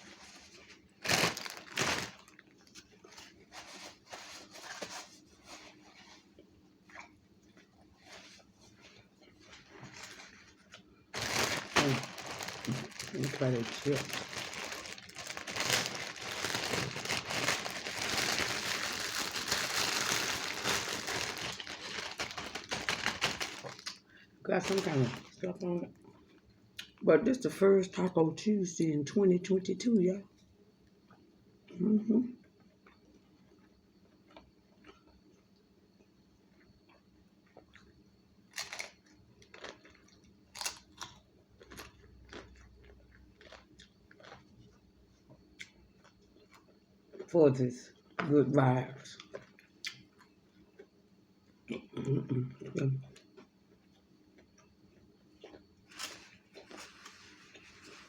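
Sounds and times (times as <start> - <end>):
food wrapping crinkling: 0.0 - 25.6, 38.5 - 44.5, 55.4 - 58.0.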